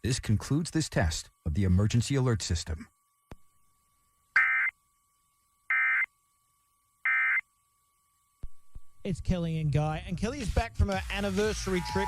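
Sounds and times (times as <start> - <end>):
harsh digital data bursts: 9.3 - 12.0.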